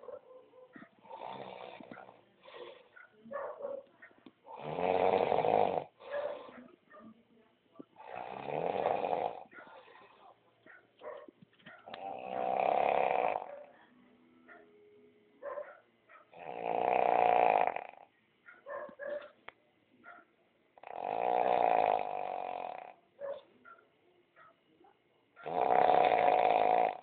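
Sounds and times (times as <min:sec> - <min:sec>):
dog snoring: 0:00.7 - 0:02.9, 0:04.4 - 0:06.6, 0:08.0 - 0:10.4, 0:11.7 - 0:13.7, 0:16.3 - 0:18.1, 0:20.8 - 0:23.4, 0:25.4 - 0:27.0.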